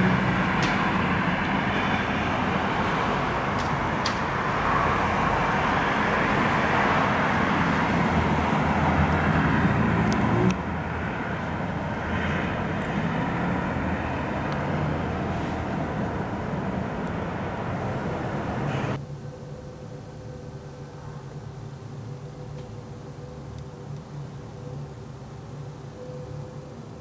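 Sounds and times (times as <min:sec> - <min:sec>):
jet engine rushing rumble: 0:00.0 - 0:19.0.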